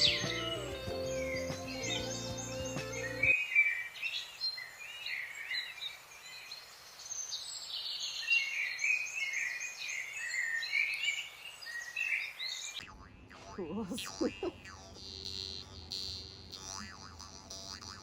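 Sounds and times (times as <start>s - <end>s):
songbirds singing: 0.0s - 12.8s.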